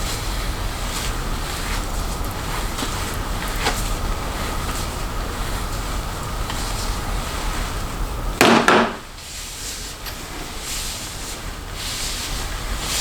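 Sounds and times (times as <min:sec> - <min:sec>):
low background noise: 0:00.0 - 0:13.0
sharp knocks: 0:08.4 - 0:09.0.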